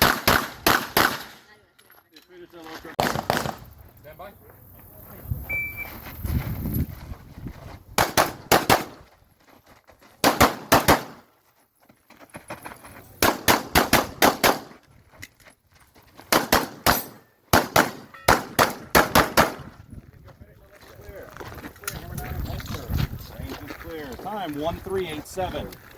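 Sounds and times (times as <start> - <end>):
pistol firing rapid shots: 0.0 - 1.4, 3.0 - 3.6, 8.0 - 9.0, 10.2 - 11.2, 13.2 - 14.7, 16.3 - 19.6
shot timer beep: 5.5 - 5.9.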